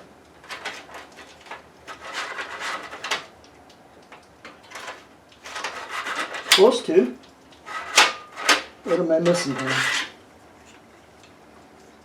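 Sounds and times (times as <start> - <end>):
plastic tray clicking and scraping: 0.4 - 3.3, 4.6 - 6.7, 7.7 - 10.2.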